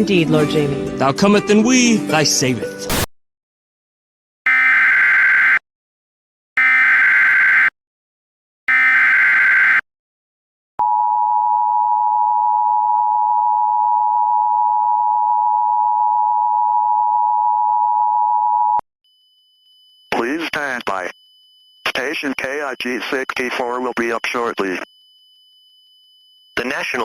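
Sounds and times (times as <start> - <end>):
steady two-tone attention signal: 19.1 - 27.0
warbling data tones: 19.2 - 27.0.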